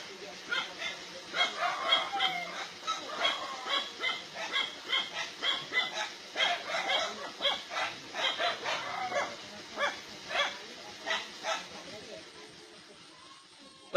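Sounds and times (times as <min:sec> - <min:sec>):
dogs barking and yelping: 0:00.4 - 0:11.8.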